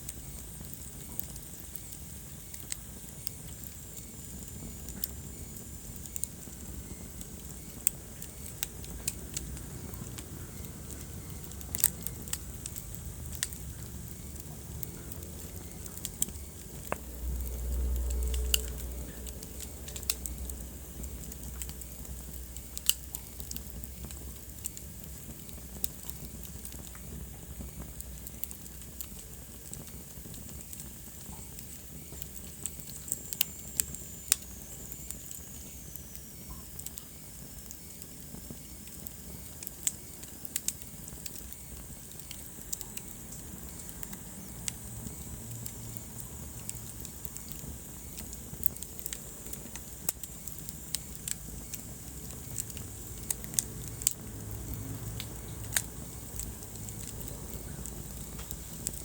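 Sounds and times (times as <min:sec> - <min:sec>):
wood fire crackling and popping: 0:00.0 - 0:59.0.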